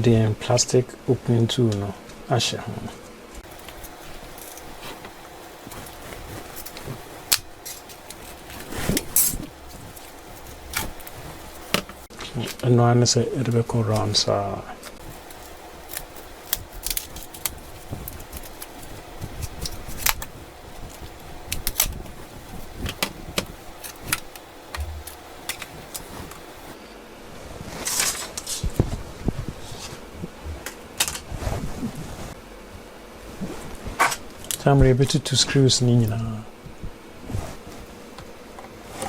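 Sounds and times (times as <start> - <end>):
plastic clips unsnapping: 3.4 - 12.1, 15.0 - 26.8.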